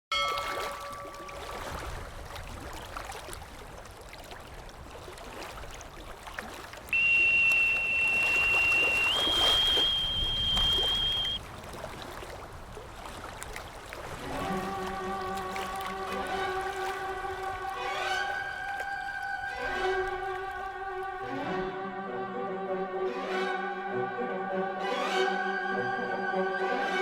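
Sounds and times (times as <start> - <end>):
water washing: 0.1 - 21.3
shrill boatswain's pipe note: 6.9 - 11.4.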